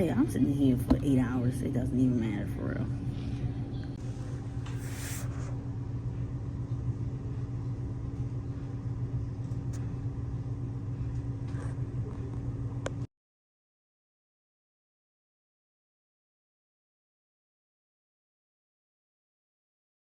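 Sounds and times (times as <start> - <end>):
low mechanical hum: 0.0 - 13.1.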